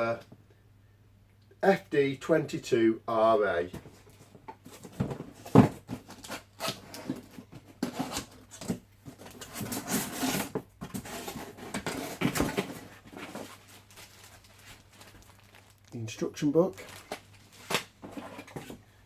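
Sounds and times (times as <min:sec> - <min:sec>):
knocks scrapes and rustles: 0:03.7 - 0:14.8, 0:17.5 - 0:18.9
cardboard packaging being opened: 0:04.7 - 0:18.8.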